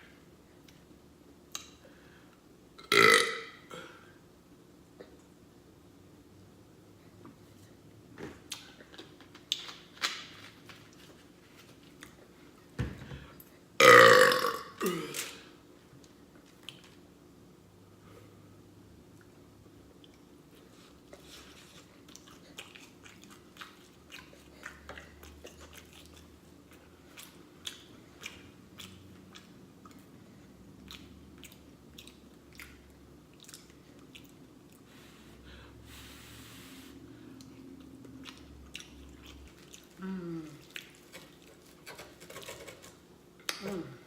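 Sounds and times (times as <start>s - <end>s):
person chewing with wet clicks: 1.5s - 1.8s, 16.0s - 17.0s, 19.2s - 34.9s, 37.4s - 43.6s.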